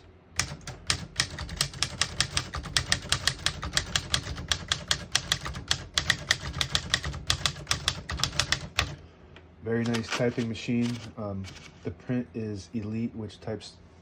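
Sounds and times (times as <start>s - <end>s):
typewriter typing: 0.4s - 9.0s, 9.8s - 11.7s.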